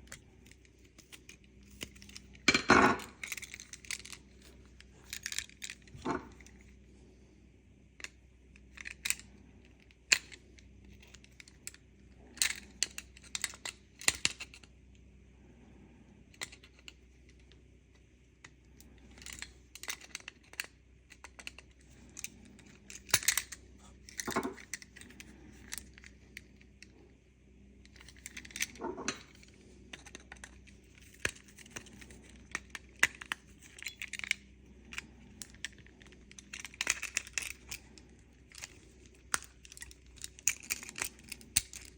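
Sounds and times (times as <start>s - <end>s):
plastic and metal parts clicking: 30.0s - 41.9s.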